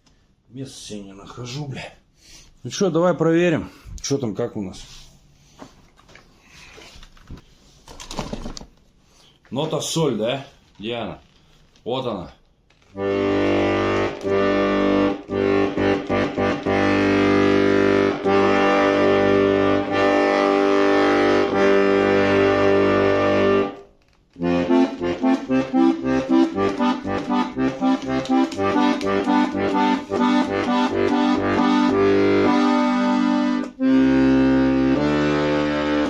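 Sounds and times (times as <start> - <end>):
button accordion playing: 12.9 - 36.0.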